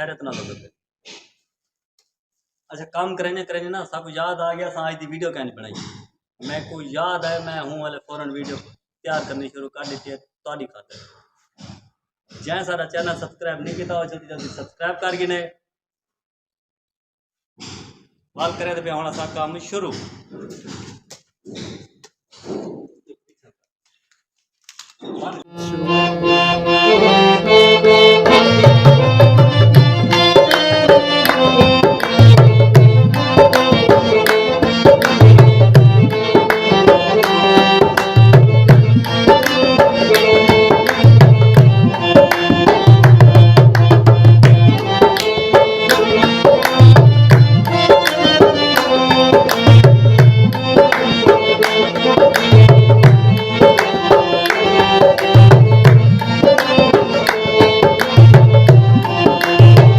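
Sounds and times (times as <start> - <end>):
reed instrument melody: 25.5 - 59.9
tabla drumming: 28.1 - 59.9.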